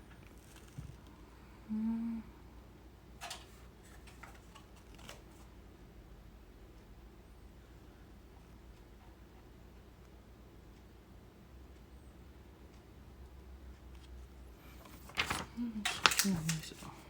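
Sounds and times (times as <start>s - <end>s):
packaging rustling and clicking: 3.2s - 5.4s, 14.7s - 17.0s.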